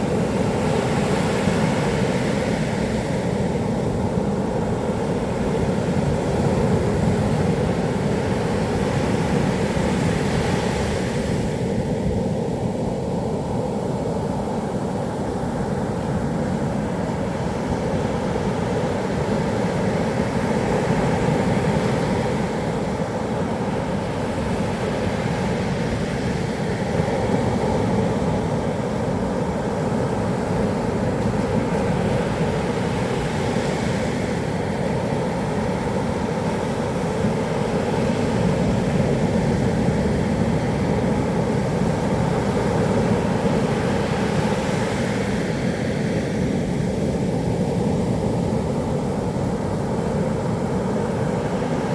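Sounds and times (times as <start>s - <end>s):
heavy surf breaking on beach: 0.0s - 51.9s.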